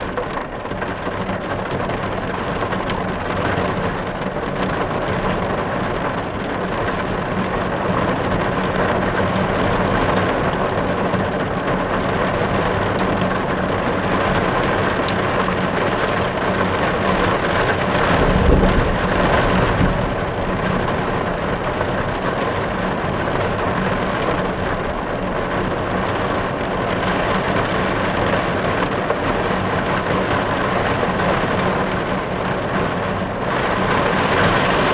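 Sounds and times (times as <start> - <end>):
heavy rain drumming on car roof: 0.0 - 34.9
low rumble: 17.8 - 22.8.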